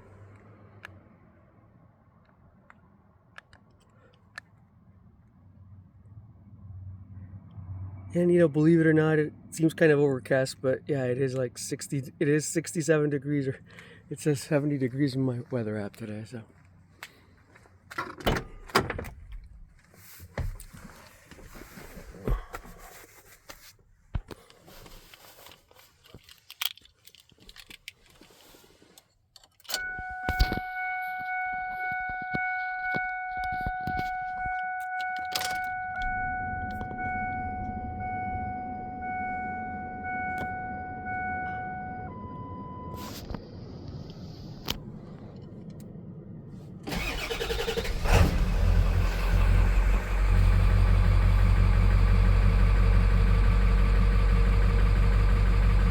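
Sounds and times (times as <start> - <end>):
keys jangling: 26.0 - 28.4
dashboard warning chime: 29.7 - 43.0
engine cranking and idling: 46.8 - 55.9.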